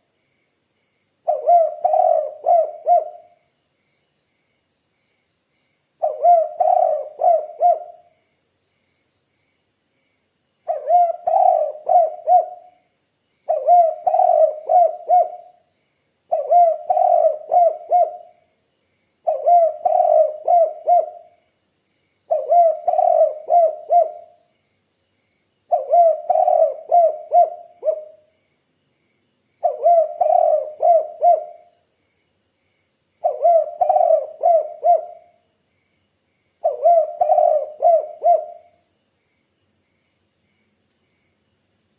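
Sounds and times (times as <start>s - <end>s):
dove cooing: 1.3s - 3.4s, 6.0s - 8.1s, 10.7s - 12.7s, 13.5s - 15.6s, 16.3s - 18.4s, 19.2s - 21.4s, 22.3s - 24.4s, 25.7s - 28.2s, 29.6s - 31.7s, 33.2s - 35.4s, 36.6s - 38.8s.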